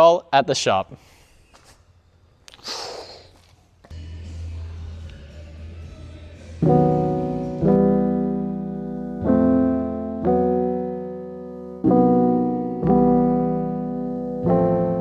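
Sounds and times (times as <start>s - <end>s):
piano chords: 6.6s - 15.0s.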